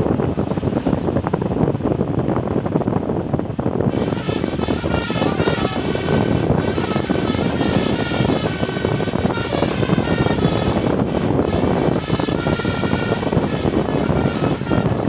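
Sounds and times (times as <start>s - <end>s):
bus running noise: 0.0s - 15.0s
melodic air horn tune: 3.9s - 15.0s.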